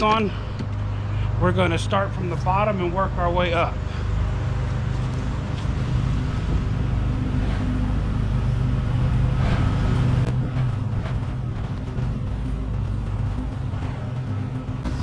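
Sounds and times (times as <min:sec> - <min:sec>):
low motor hum: 0:00.0 - 0:15.0.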